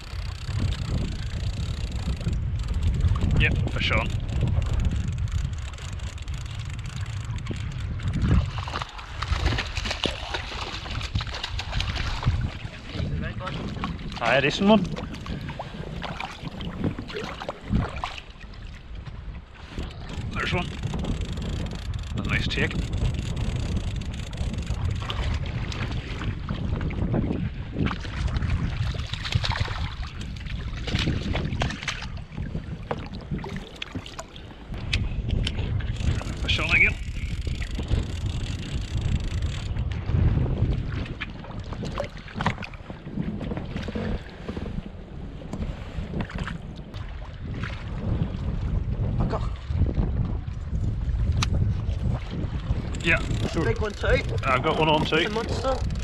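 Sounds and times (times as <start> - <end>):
water sloshing against boat: 0.0 - 56.0
wind buffeting microphone: 0.0 - 56.0
splashes: 8.3 - 18.9, 27.8 - 34.8.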